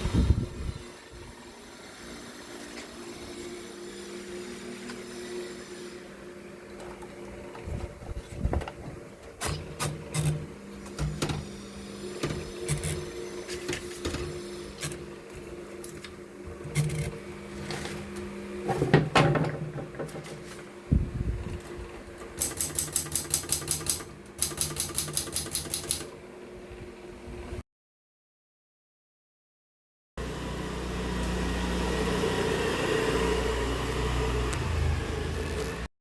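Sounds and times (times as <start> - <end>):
typewriter mechanism clacking: 22.4 - 26.1.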